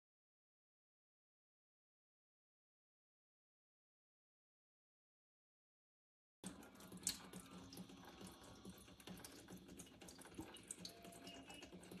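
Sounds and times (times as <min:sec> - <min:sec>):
faint watery sound: 0:06.4 - 0:12.0
small clicks and drips: 0:06.4 - 0:12.0.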